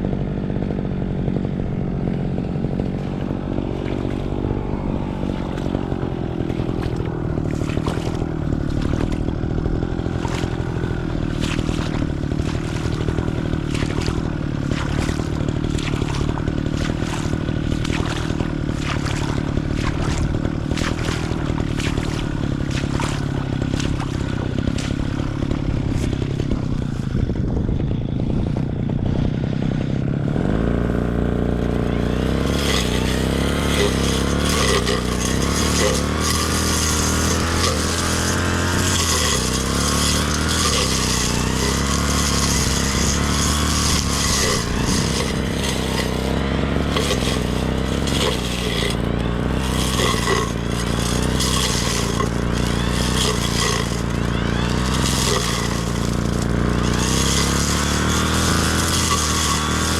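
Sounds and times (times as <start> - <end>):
grass cutter engine running: 0.0 - 59.9
sharp ticks and rattles: 32.5 - 59.9.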